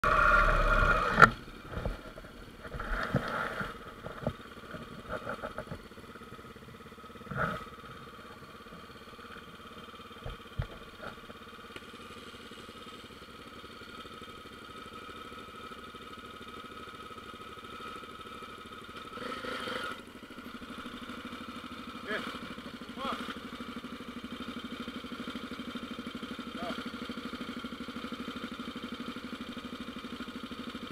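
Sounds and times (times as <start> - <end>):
motorcycle engine idling: 0.0 - 30.9
knocks and clatters: 1.2 - 5.9.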